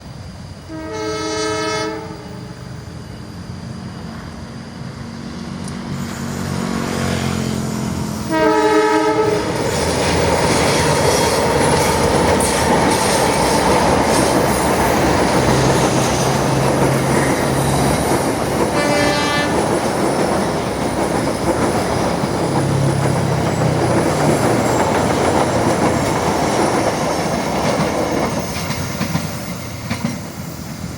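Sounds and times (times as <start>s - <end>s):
train horn blasts: 0.6s - 2.6s, 8.2s - 9.6s, 18.7s - 19.7s
locomotive rumble: 1.9s - 30.9s
wheels clattering on rails: 9.1s - 30.6s.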